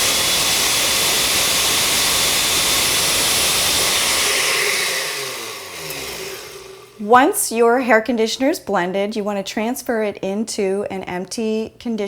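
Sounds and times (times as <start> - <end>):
blender running at high speed: 0.0 - 7.1
blender motor winding down: 0.0 - 7.3.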